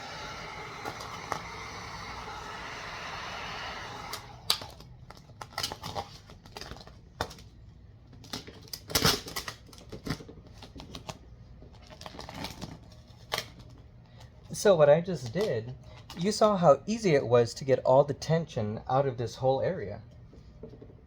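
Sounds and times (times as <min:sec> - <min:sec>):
vinyl film crinkling and clicking: 0:04.5 - 0:16.6.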